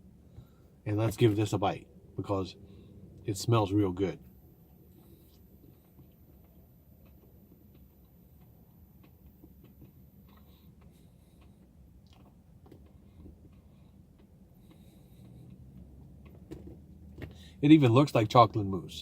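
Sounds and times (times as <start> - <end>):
low room hum: 0.0 - 19.0
chewing mouth clicks: 5.0 - 16.4.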